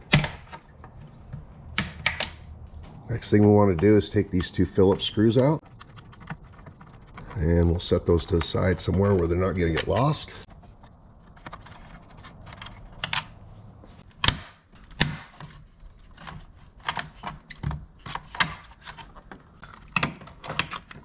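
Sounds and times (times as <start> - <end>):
plastic parts clicking: 0.0 - 3.0, 8.3 - 21.0
hand tool handling: 8.2 - 21.0.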